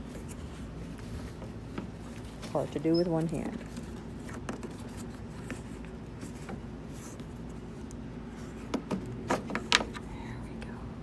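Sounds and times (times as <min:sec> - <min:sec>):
steady low hum: 0:00.0 - 0:11.0
plastic clicks and scraping: 0:08.6 - 0:10.1.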